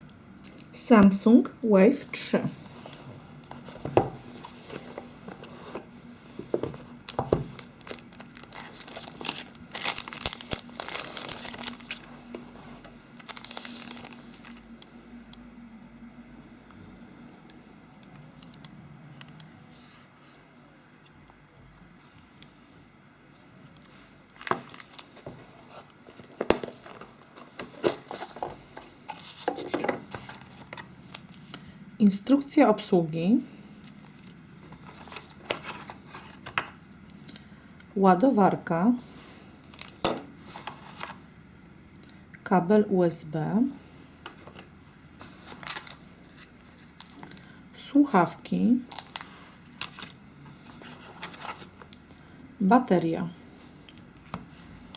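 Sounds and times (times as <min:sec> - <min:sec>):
cardboard and plastic rubbing: 0:02.6 - 0:14.7, 0:23.4 - 0:31.8, 0:33.8 - 0:37.0, 0:39.6 - 0:41.2, 0:44.2 - 0:47.4, 0:48.9 - 0:52.0
packaging crinkling and rustling: 0:02.8 - 0:14.9, 0:23.7 - 0:31.8, 0:33.8 - 0:37.3, 0:39.6 - 0:41.2, 0:44.3 - 0:47.6, 0:48.8 - 0:52.2.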